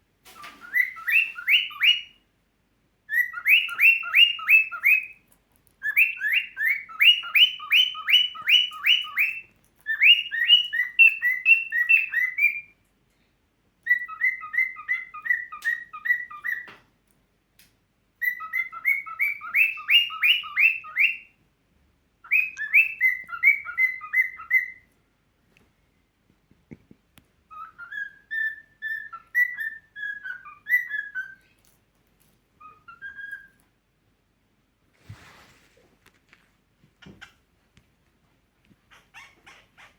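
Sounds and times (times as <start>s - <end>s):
cockatiel whistling: 0.3s - 2.2s, 3.1s - 5.2s, 5.8s - 12.8s, 13.8s - 16.8s, 18.2s - 21.4s, 22.2s - 24.9s, 27.5s - 31.4s, 32.6s - 33.6s.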